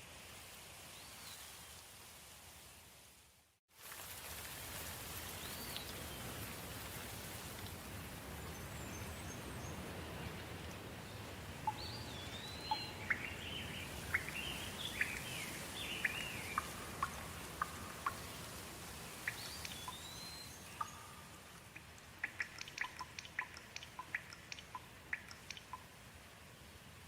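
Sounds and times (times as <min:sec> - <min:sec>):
light rain falling: 0:00.0 - 0:27.0
songbird chirping and whistling: 0:11.6 - 0:18.4, 0:19.1 - 0:21.4, 0:22.2 - 0:25.8.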